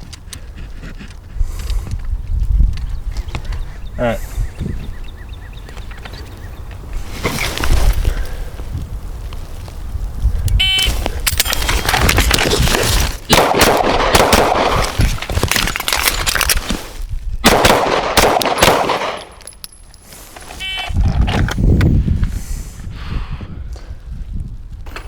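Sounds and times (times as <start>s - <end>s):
suppressed rifle shots: 13.3s - 14.9s, 17.4s - 19.3s.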